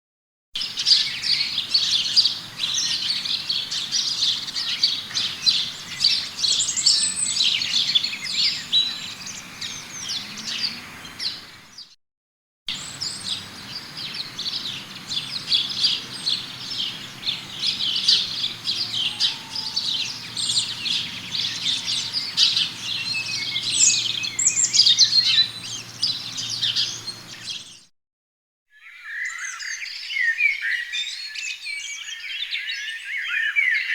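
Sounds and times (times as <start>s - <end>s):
small birds chirping: 0.6s - 12.0s, 12.7s - 27.9s.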